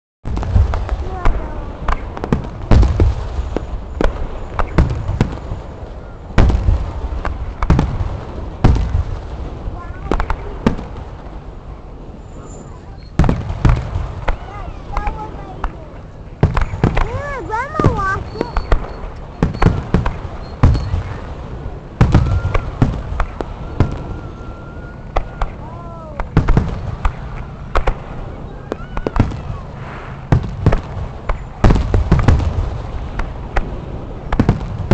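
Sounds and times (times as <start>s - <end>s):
fireworks boom with rumble: 0.2s - 34.9s
fireworks cracking: 0.2s - 34.9s
high firework whistle: 16.6s - 21.2s, 22.0s - 26.2s.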